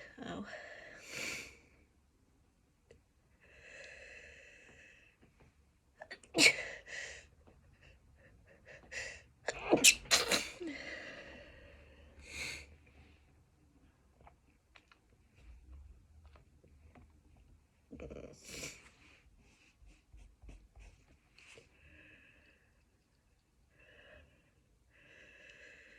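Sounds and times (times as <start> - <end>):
person sneezing: 9.5 - 10.7.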